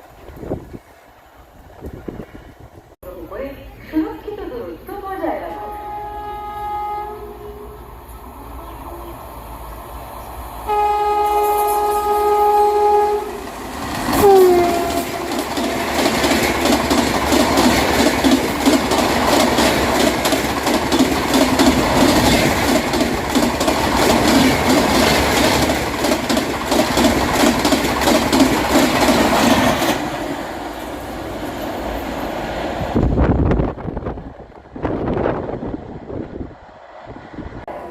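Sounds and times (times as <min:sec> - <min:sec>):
train horn blast: 0:05.3 - 0:09.2, 0:10.6 - 0:13.6, 0:14.2 - 0:15.6
train wheels rumbling and clattering: 0:07.9 - 0:36.6.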